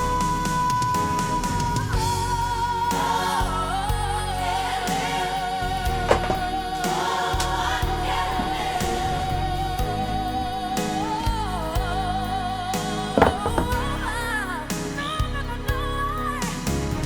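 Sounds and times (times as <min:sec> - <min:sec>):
band with steady bass: 0:00.0 - 0:17.0
backing choir voices: 0:02.7 - 0:14.8.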